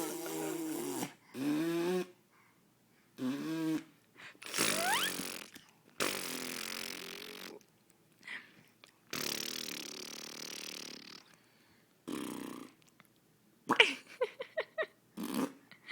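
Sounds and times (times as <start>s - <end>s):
child blowing raspberries: 0.0s - 2.2s, 3.2s - 7.6s, 9.1s - 11.3s.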